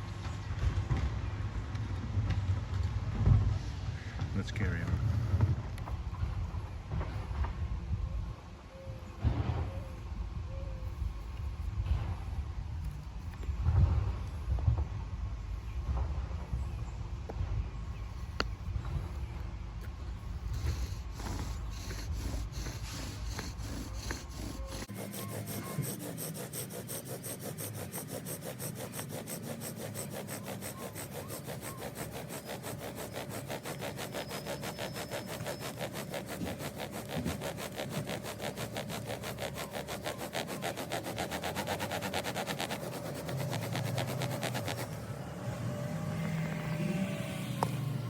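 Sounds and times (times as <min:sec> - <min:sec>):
bow drill rubbing: 0:20.4 - 0:45.1.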